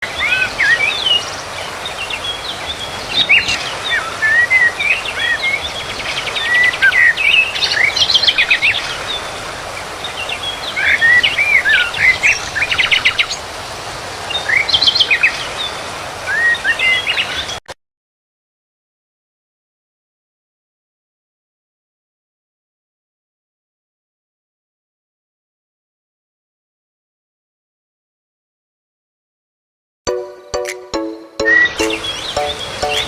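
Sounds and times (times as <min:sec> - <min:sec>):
small birds chirping and trilling: 0:00.0 - 0:17.6, 0:31.4 - 0:33.0
steady outdoor hiss: 0:00.0 - 0:17.6, 0:30.1 - 0:33.0.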